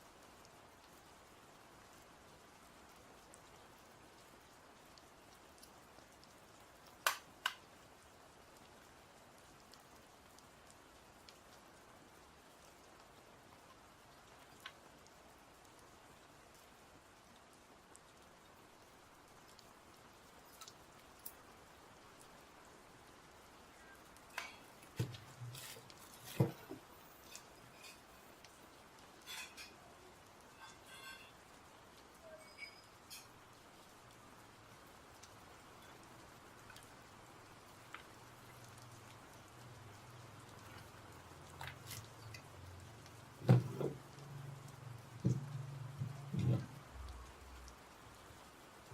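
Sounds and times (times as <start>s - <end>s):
faint steady hiss: 0.0s - 48.9s
faint ticks: 9.4s - 22.4s
handling clicks and rustles: 43.4s - 44.2s.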